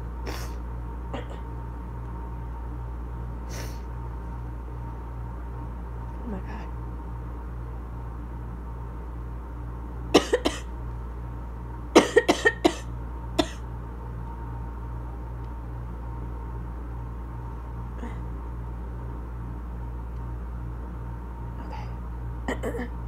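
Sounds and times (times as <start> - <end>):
steady low hum: 0.0 - 23.0
person coughing: 10.2 - 10.7, 12.0 - 13.6, 22.5 - 23.0.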